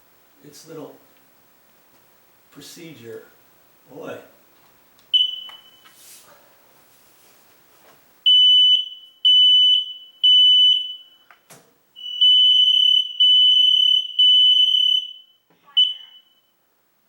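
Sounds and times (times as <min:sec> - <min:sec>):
smoke alarm beeping: 0:05.1 - 0:06.0, 0:08.2 - 0:16.6.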